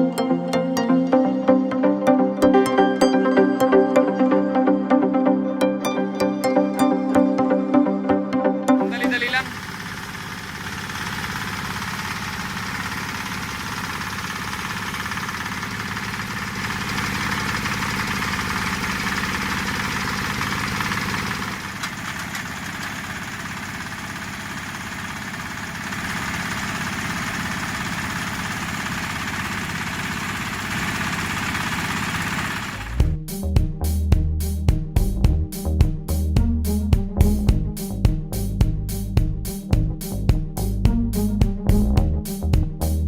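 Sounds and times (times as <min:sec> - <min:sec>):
well drilling machine drone: 0:09.1 - 0:33.1.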